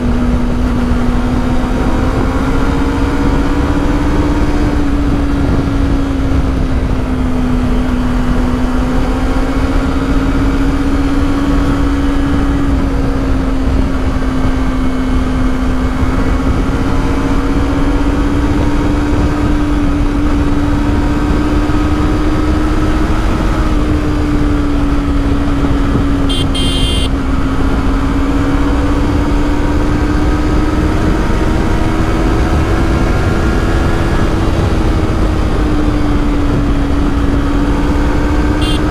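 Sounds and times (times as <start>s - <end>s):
motorcycle engine cruising: 0.0s - 38.9s
wind and road noise: 0.0s - 38.9s
brief high-pitched tone: 26.3s - 27.1s.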